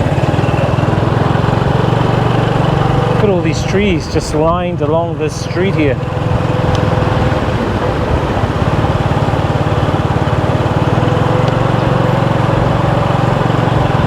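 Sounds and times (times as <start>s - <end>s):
motorbike engine running: 0.0s - 14.0s
road and wind noise: 0.0s - 14.0s.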